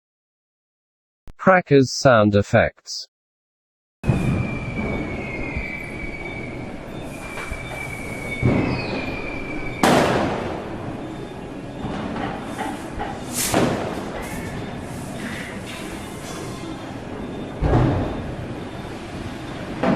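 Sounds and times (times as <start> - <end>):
steady high whistle: 4.1 - 9.9
firecracker bangs: 9.8 - 10.6.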